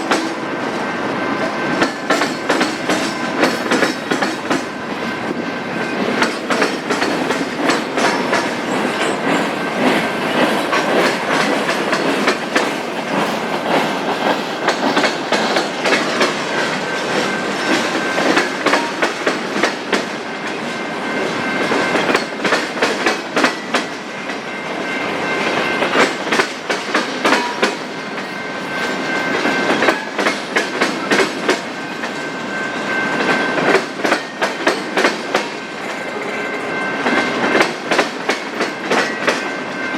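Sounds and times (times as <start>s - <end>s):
freight train rolling past: 0.0s - 39.9s
train wheels clacking over rail joints: 0.0s - 39.9s.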